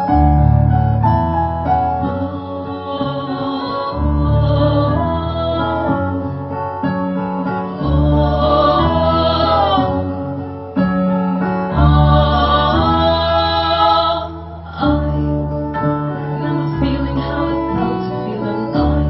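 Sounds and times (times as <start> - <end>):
voices singing: 2.0 - 6.6, 7.4 - 10.4, 11.4 - 15.4, 16.3 - 19.0.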